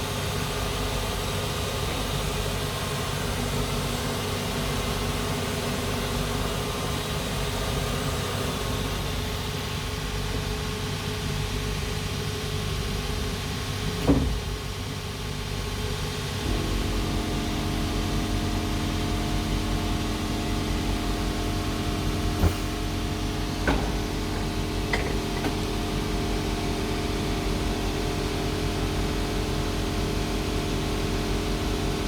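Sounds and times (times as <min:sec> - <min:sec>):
short clicks and knocks: 0:23.6 - 0:25.6.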